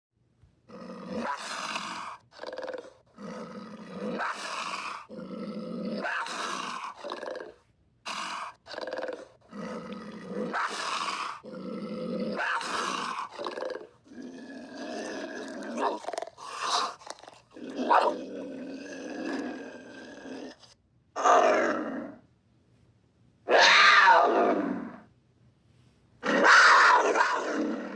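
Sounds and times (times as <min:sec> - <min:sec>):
panther rasping calls: 0:26.2 - 0:27.9.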